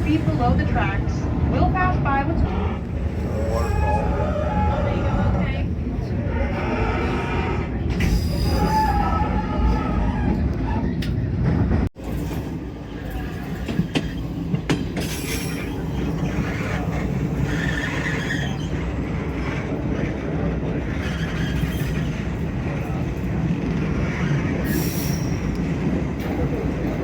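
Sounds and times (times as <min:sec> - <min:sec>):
train wheels rumbling: 0:00.0 - 0:27.0
rail clicks: 0:07.8 - 0:27.0.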